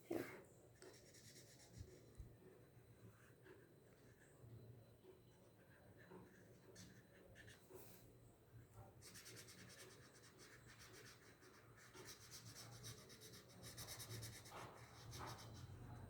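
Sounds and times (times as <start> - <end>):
marker scratching on paper: 0.8 - 2.0, 5.7 - 8.0, 9.0 - 15.8.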